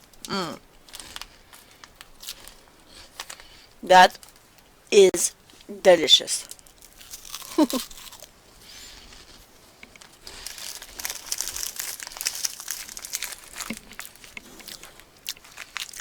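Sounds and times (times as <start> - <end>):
plastic candy packet crinkling: 6.4 - 8.3, 10.0 - 16.0.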